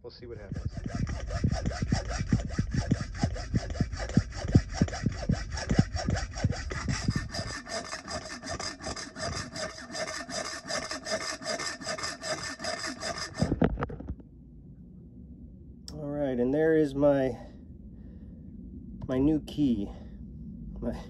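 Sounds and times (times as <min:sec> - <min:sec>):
hacksaw cutting metal: 0:00.5 - 0:13.6.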